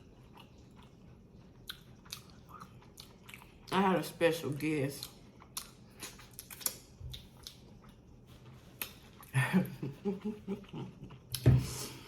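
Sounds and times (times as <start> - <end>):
person chewing: 0.0 - 3.8, 5.0 - 9.4.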